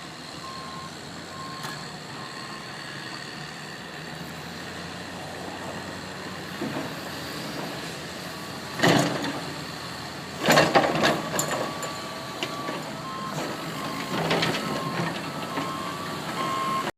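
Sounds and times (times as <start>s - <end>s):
heavy diesel machinery running: 0.0s - 16.9s
reversing beeper: 11.6s - 16.9s.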